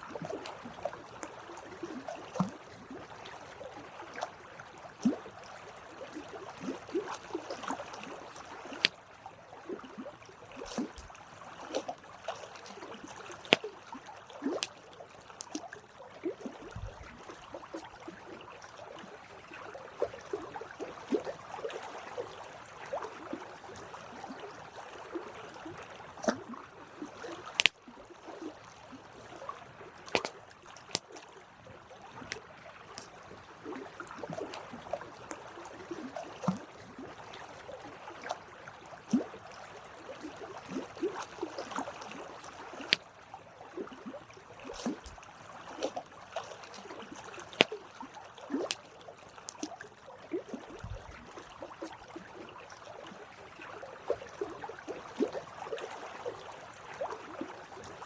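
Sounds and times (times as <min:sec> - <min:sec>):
campfire crackling and popping: 0:27.5 - 0:27.8.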